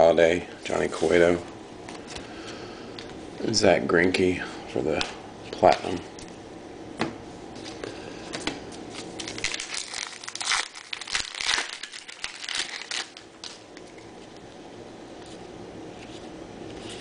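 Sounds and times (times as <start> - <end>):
card pack wrapper tearing and crinkling: 8.9 - 14.0.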